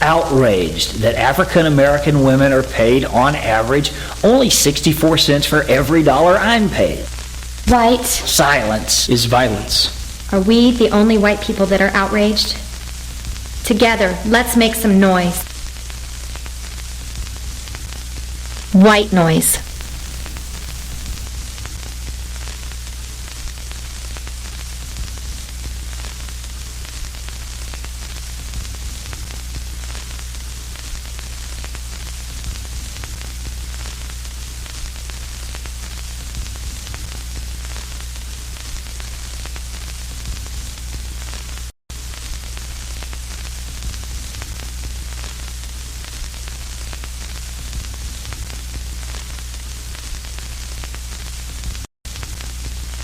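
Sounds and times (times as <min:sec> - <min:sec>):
low electrical hum: 0:00.0 - 0:21.3
static hiss: 0:00.0 - 0:53.0.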